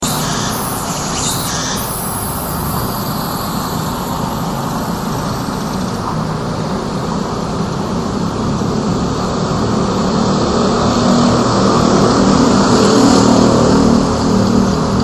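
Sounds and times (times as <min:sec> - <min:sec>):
bright hiss: 0:00.0 - 0:06.3
road traffic noise: 0:00.0 - 0:15.0.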